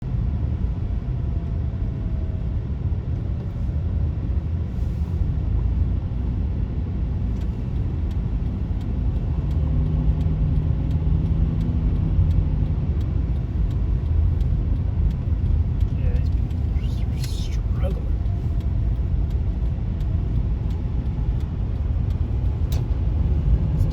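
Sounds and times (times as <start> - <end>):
car road rumble from inside: 0.0 - 23.9
faint engine hum: 0.0 - 23.9
faint ticks: 7.3 - 23.9.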